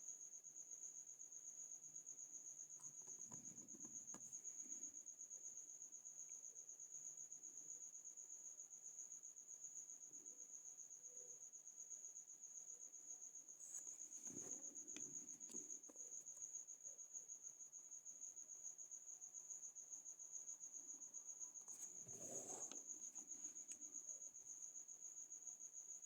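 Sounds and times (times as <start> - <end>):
cricket trilling: 0.0 - 26.0
soft rustle: 13.6 - 16.5, 21.1 - 24.2.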